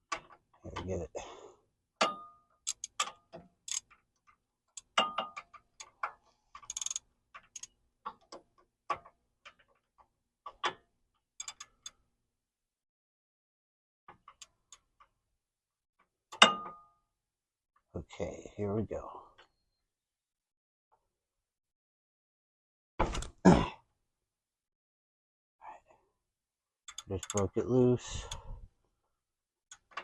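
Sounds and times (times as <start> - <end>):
wrench clicking: 2.6 - 3.9, 6.6 - 7.7, 11.4 - 11.9, 26.9 - 27.4.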